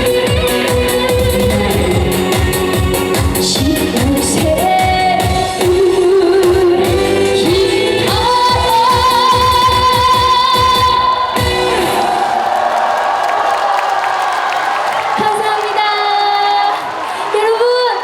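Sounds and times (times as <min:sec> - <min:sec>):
band with steady drum beat: 0:00.0 - 0:11.8
woman singing: 0:00.0 - 0:12.1, 0:15.2 - 0:18.0.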